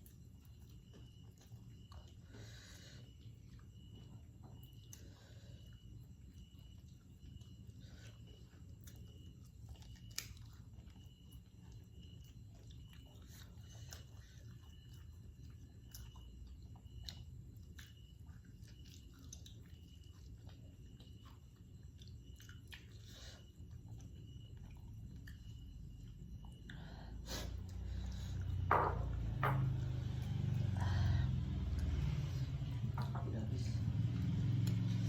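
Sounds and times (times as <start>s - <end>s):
person chewing food: 6.4s - 30.6s.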